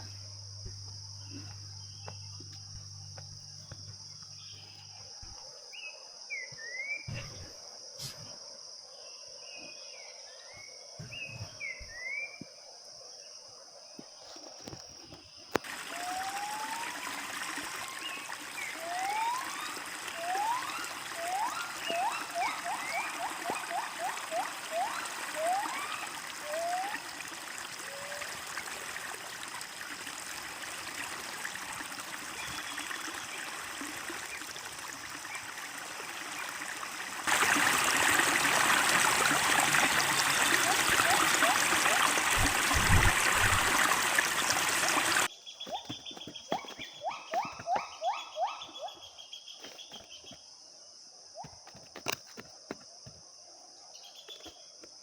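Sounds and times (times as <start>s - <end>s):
insect drone: 0.0s - 55.0s
flowing stream: 14.0s - 48.1s, 51.5s - 53.2s
bird chirps: 45.3s - 50.4s
animal whistled calls: 45.7s - 50.0s.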